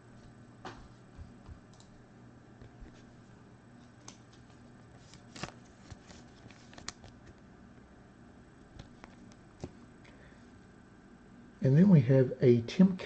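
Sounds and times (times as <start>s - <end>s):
faint steady hum: 0.0s - 13.0s
cards scraping rustle: 3.8s - 7.2s
cards clicking softly: 3.8s - 7.4s.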